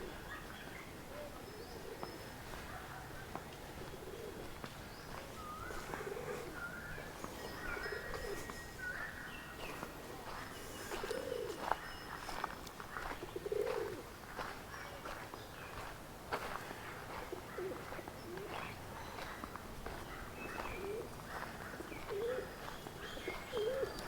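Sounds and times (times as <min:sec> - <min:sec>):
dove cooing: 0:01.1 - 0:02.9, 0:03.7 - 0:11.9, 0:12.9 - 0:14.2, 0:17.2 - 0:18.8, 0:20.6 - 0:24.0.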